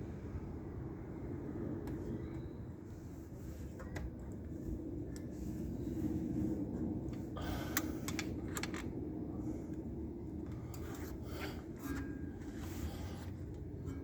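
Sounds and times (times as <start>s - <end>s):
steady low hum: 0.0s - 14.0s
light metallic clicks of pliers: 7.7s - 8.9s.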